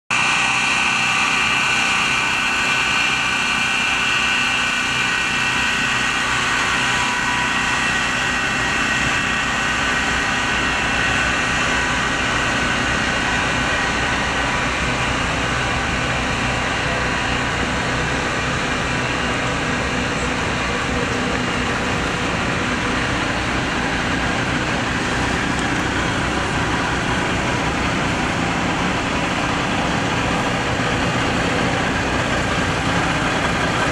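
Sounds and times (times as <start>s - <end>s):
crane engine running: 0.1s - 33.9s
high whine: 0.1s - 33.9s.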